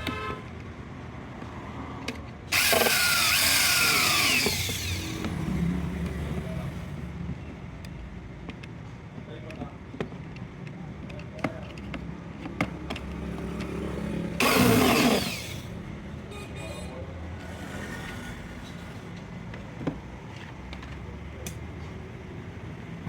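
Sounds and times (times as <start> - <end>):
loud noisy burst: 2.5 - 5.2, 14.4 - 15.7.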